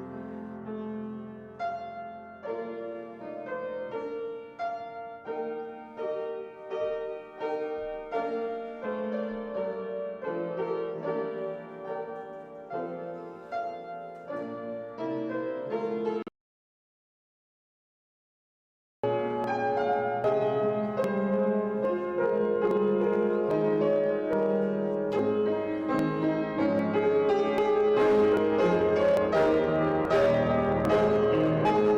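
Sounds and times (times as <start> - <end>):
solo piano melody: 0.0 - 16.3, 19.0 - 31.9.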